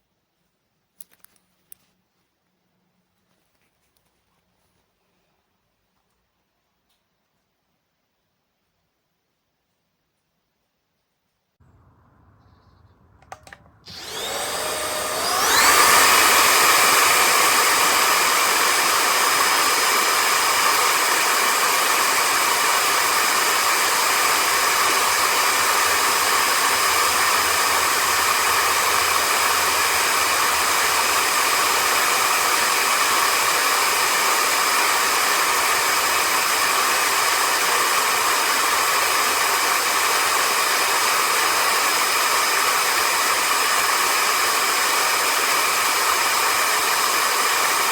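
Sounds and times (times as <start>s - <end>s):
vacuum cleaner motor whining: 13.2s - 47.9s.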